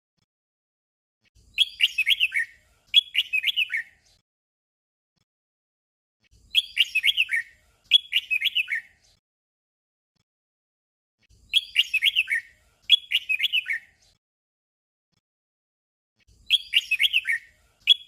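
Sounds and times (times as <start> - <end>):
bird singing: 1.5 - 4.0, 6.5 - 9.1, 11.4 - 14.0, 16.4 - 18.0.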